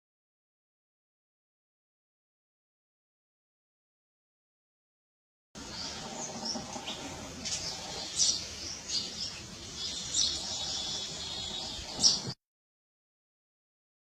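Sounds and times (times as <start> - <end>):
small birds chirping: 5.6 - 12.4
steady background hiss: 5.6 - 12.4.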